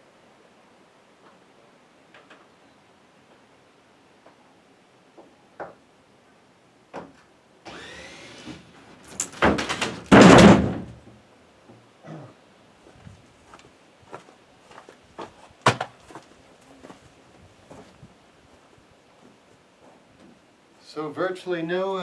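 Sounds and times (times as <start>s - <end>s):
roof panel scraping and creaking: 7.7s - 11.1s
panel crashing to the ground: 8.4s - 11.1s, 15.6s - 16.0s
knocks: 9.2s - 11.1s, 15.6s - 16.0s.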